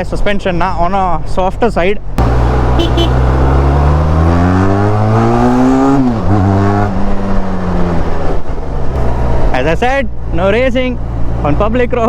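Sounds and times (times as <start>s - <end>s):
motorcycle engine accelerating: 2.2s - 9.9s.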